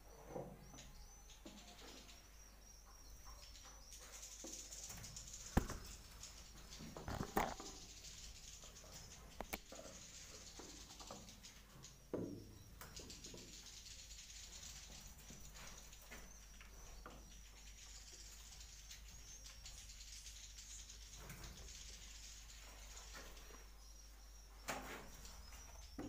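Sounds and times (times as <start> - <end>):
sharp knocks and scrapes: 4.0 - 8.5.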